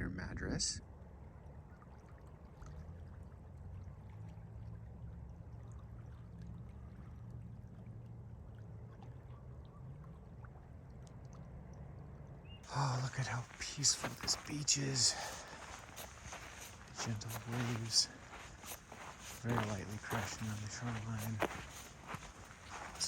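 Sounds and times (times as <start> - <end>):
light water splashes: 1.0 - 23.0
lake waves lapping on shore: 12.7 - 23.0.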